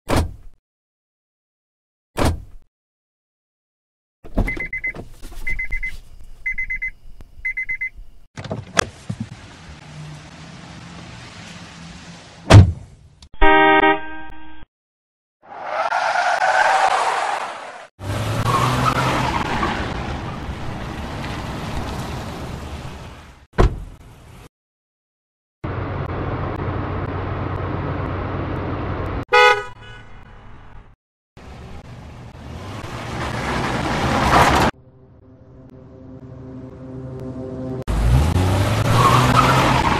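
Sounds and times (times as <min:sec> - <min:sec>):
car warning chime beeping: 0:04.5 - 0:08.2
car horn toot: 0:13.4 - 0:14.6, 0:29.3 - 0:30.2.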